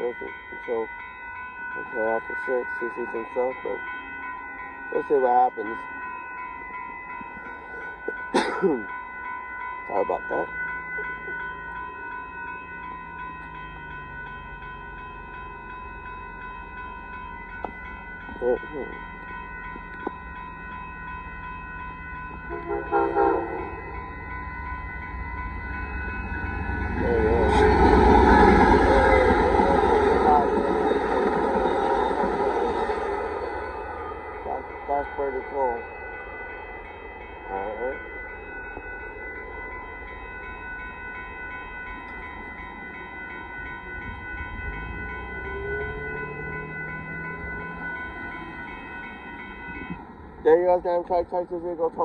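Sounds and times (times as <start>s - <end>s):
crossing warning bells ringing: 0.0s - 52.0s
train rumble: 0.0s - 52.0s
locomotive horn blast: 22.4s - 23.8s.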